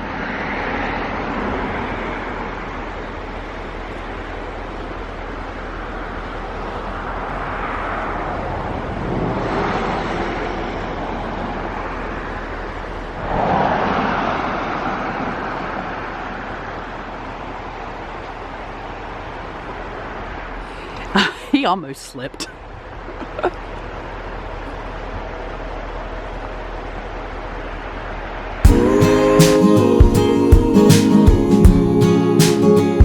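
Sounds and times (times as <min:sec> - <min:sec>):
cars passing on road: 0:00.0 - 0:33.0
steady background rush: 0:28.1 - 0:33.0.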